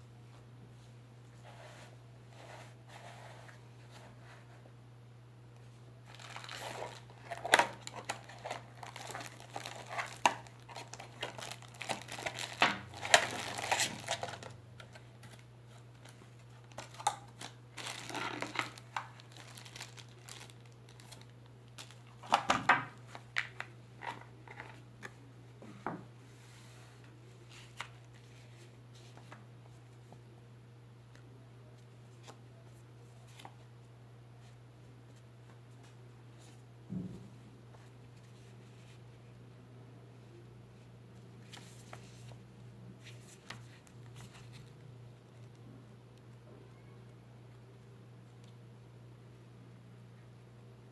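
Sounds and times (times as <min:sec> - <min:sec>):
packaging crinkling and tearing: 0:06.1 - 0:23.5.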